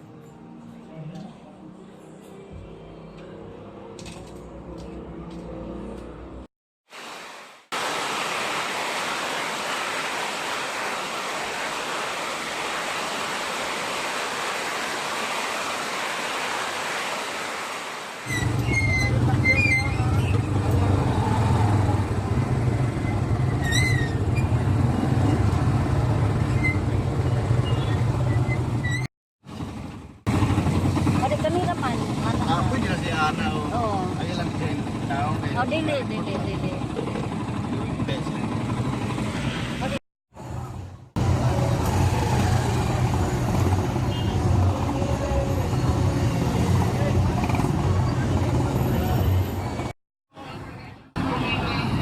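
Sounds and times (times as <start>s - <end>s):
road traffic noise: 1.5s - 52.0s
brief high squeaks: 18.3s - 20.6s, 23.0s - 24.6s, 26.4s - 27.0s, 27.6s - 29.1s
vehicle engine rattling rumble: 18.3s - 49.9s.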